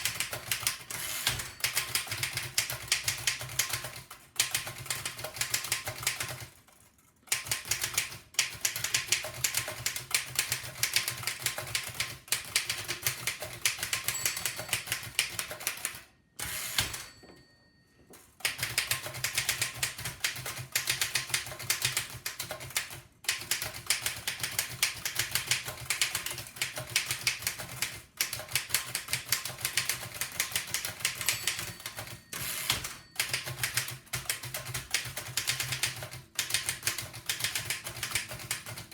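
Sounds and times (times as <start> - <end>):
typewriter keystroke clacks: 0.0 - 16.1, 18.4 - 38.9.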